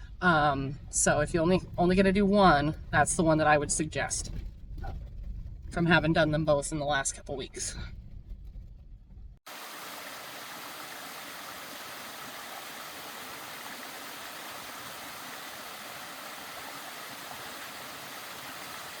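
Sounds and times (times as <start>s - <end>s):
running water rushing: 9.4s - 19.0s.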